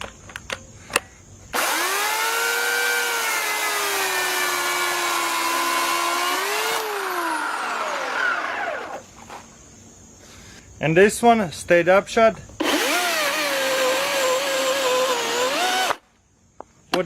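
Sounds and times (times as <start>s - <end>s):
electric chainsaw cutting log: 1.6s - 9.0s, 12.6s - 16.0s.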